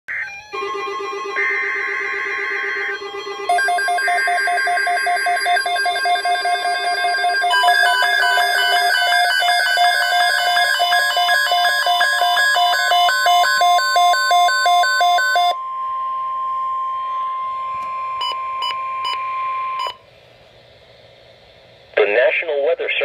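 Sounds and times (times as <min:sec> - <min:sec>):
two-tone electronic beeping alarm: 0:00.1 - 0:20.0
steady electronic alert tone: 0:00.3 - 0:20.0
short beeps: 0:05.9 - 0:20.0
faint radio hiss: 0:20.1 - 0:23.0.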